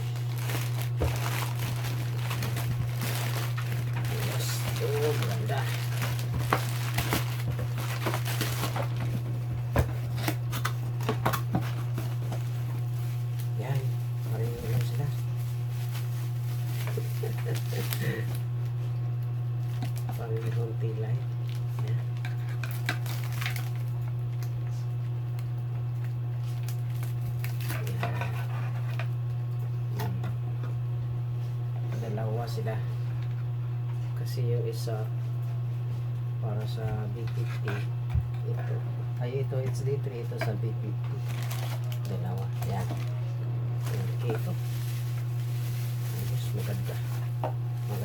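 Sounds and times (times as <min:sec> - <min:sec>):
plastic packaging clicks and rustles: 0:00.0 - 0:18.4, 0:21.4 - 0:24.5, 0:26.4 - 0:29.1, 0:41.1 - 0:43.2, 0:43.8 - 0:48.0
steady low hum: 0:00.0 - 0:48.0.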